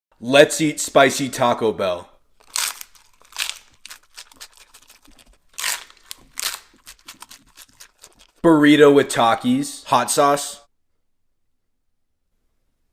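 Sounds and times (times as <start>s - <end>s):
crunchy food bites: 2.4s - 8.4s.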